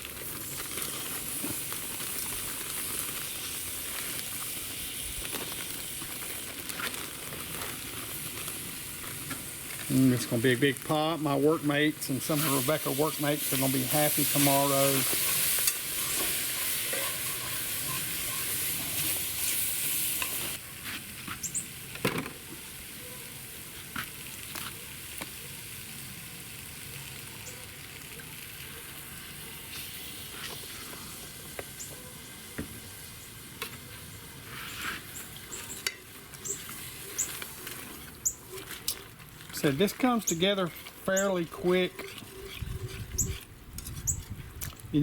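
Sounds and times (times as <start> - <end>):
vegetables sizzling in a pot: 0.0 - 38.6
spoon scraping a pot: 15.0 - 19.1, 40.6 - 44.4.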